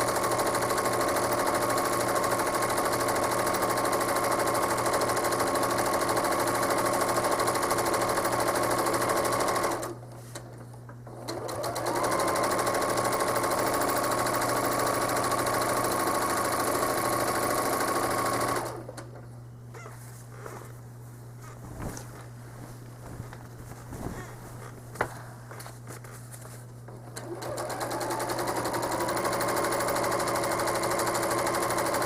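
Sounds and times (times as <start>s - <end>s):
sewing machine whining: 0.0s - 10.0s, 11.0s - 19.2s, 26.9s - 32.0s.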